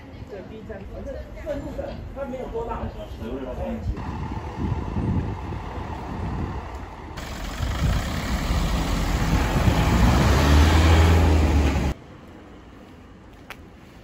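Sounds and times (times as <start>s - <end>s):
road noise: 2.0s - 14.0s
vehicle engine accelerating: 4.0s - 12.0s.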